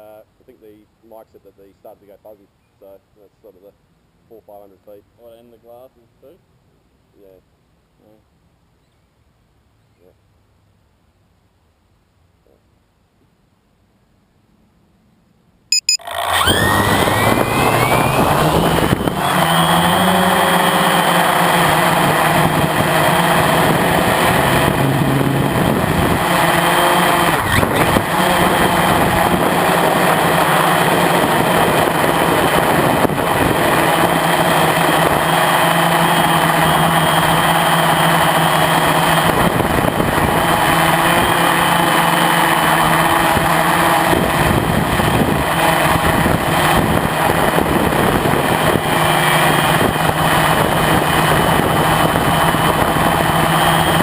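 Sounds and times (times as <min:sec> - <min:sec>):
quadcopter propellers buzzing: 0:15.8 - 0:54.0.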